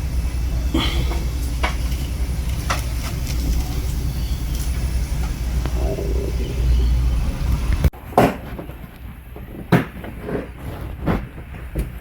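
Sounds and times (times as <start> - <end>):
low rumble: 4.0 - 7.9.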